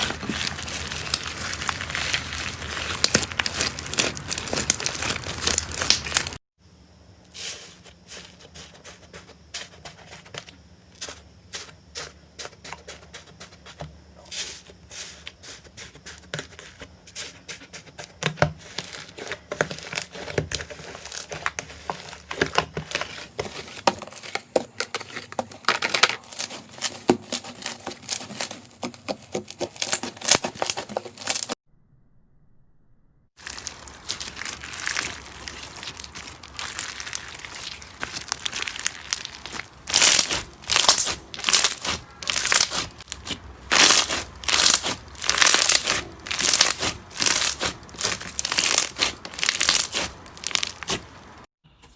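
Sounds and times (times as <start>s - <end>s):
slime squished with sticky crackles: 0.0s - 6.4s, 25.8s - 31.6s, 33.4s - 51.5s.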